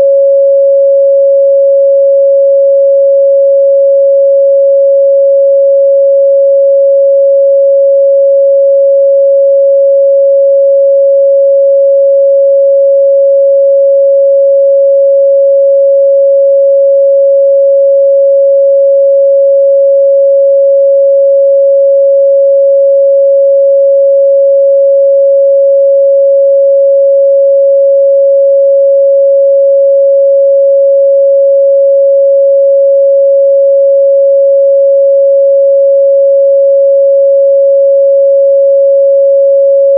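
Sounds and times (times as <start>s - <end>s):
sine wave test tone: 0.0s - 39.9s.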